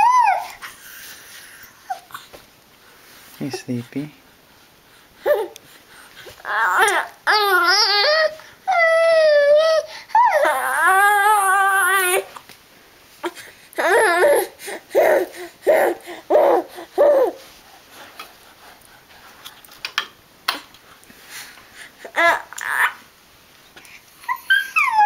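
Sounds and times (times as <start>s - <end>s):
baby squealing: 22.2s - 23.0s, 24.3s - 25.0s.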